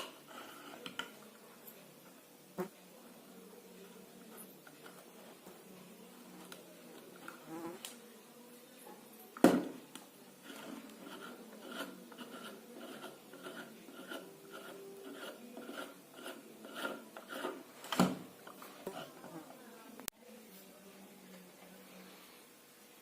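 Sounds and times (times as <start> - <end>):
rhythmic scraping strokes: 10.4 - 17.9.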